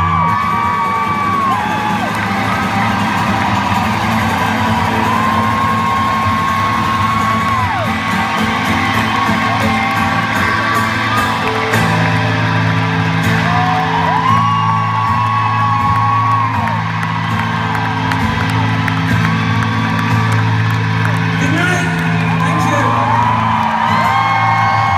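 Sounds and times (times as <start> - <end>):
audience whooping: 0.0 - 24.9
live concert music: 0.0 - 24.9.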